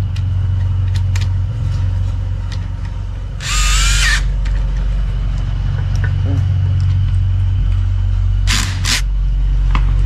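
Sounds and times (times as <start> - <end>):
low hum: 0.0 - 10.0
power drill spinning: 3.4 - 4.3, 8.5 - 9.1.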